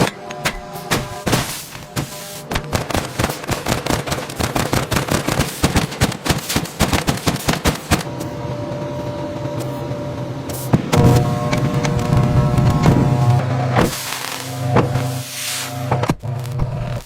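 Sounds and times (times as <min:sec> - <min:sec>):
rapid crackle of clicks and bangs: 0:00.0 - 0:08.1
mechanical hum with held tone: 0:00.0 - 0:17.0.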